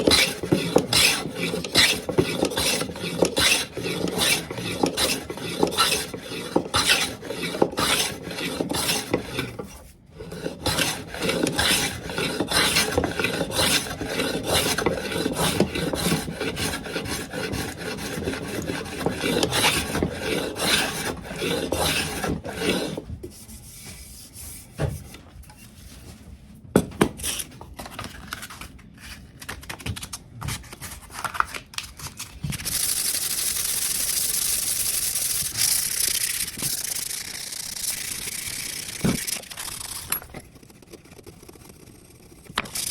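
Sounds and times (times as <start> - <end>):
wood rubbing strokes: 0.0 - 24.7, 33.4 - 42.9.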